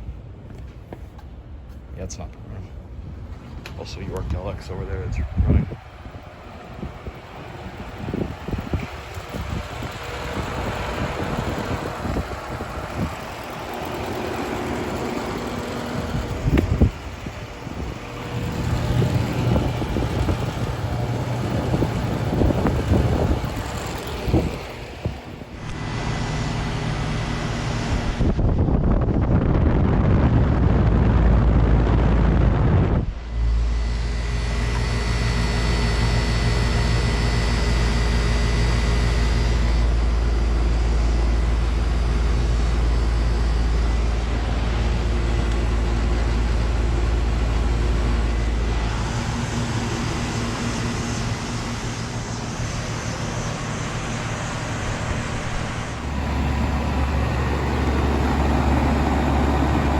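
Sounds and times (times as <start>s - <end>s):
compressor humming: 0.0s - 59.9s
condenser fan whoosh: 1.4s - 59.9s
wind on microphone: 2.9s - 26.2s, 27.0s - 35.3s.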